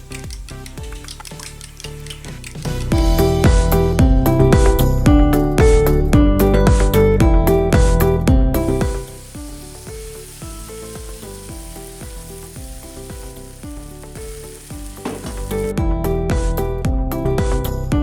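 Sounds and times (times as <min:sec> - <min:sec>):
omelette sizzling in a pan: 0:00.0 - 0:03.4, 0:08.5 - 0:15.7
soft background music: 0:00.0 - 0:18.0.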